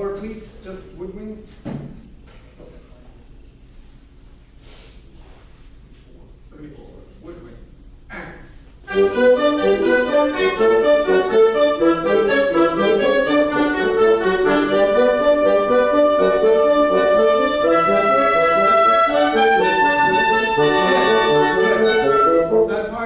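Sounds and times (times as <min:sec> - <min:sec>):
woodwind section playing: 0:08.9 - 0:23.0.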